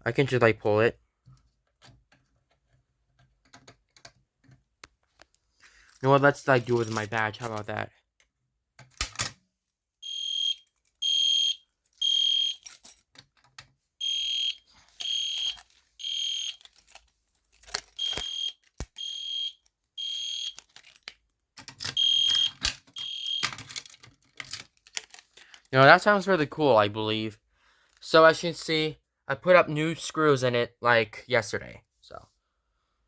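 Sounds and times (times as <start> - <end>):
fire alarm horn blasts: 10.0 - 12.6, 14.0 - 16.6, 18.0 - 20.6, 22.0 - 23.5.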